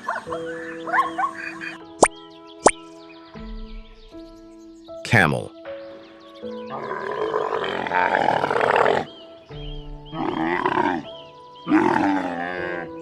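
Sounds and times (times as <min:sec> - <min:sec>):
background music with held notes: 0:00.0 - 0:13.0
camel calling: 0:06.7 - 0:09.2, 0:10.1 - 0:13.0.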